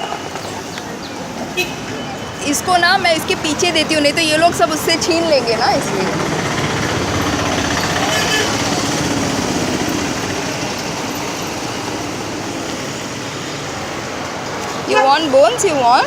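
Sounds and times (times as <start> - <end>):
small engine running: 4.4 - 11.7.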